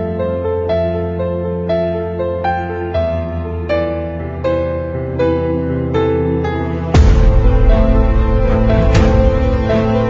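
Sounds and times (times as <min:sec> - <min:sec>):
soft piano melody: 0:00.0 - 0:10.0
sustained low chords: 0:05.2 - 0:10.0.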